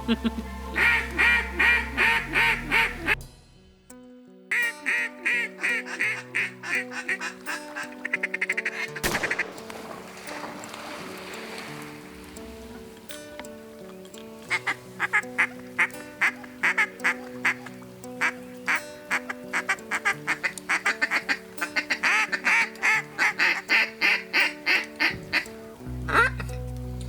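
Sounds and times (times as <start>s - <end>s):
duck quacks: 0.0s - 3.2s, 4.5s - 9.8s, 14.5s - 26.6s
background music: 0.0s - 27.0s.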